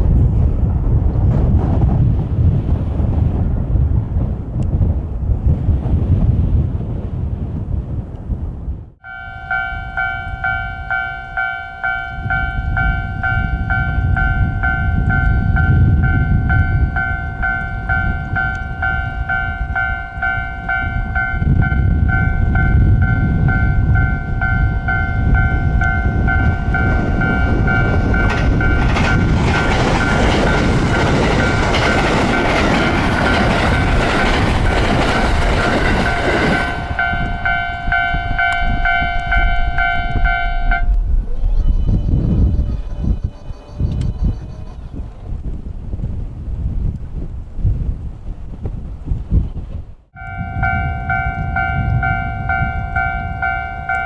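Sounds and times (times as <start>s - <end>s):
wind buffeting microphone: 0.0s - 54.0s
level crossing warning bell: 9.0s - 41.0s, 50.2s - 54.0s
train passing over rails: 9.0s - 46.2s, 49.7s - 54.0s.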